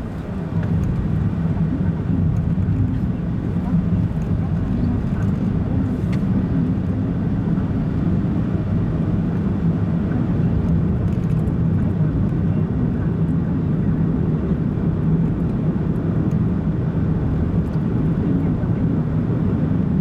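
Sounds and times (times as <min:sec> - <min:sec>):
car driving on road: 0:00.0 - 0:20.0.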